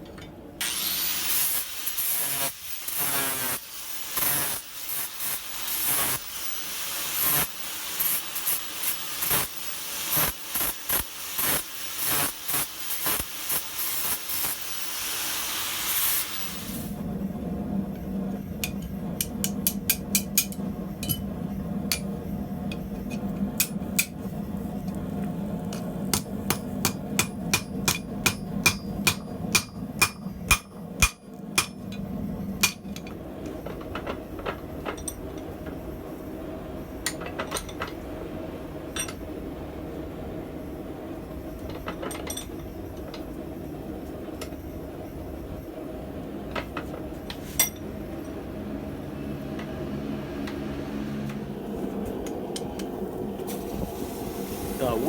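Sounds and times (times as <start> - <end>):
steady hum: 16.7 - 37.3
hammer striking tongs on anvil: 18.6 - 21.3, 21.9 - 22.1, 22.7 - 24.2, 26.1 - 32.0, 32.6 - 33.1.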